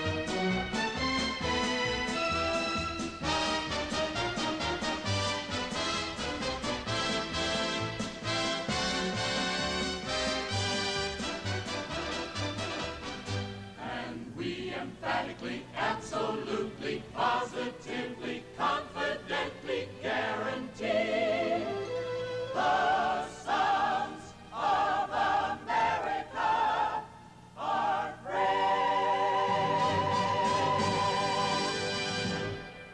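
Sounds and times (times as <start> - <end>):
orchestra playing: 0.0 - 13.7, 29.5 - 32.9
choir singing: 13.7 - 32.8.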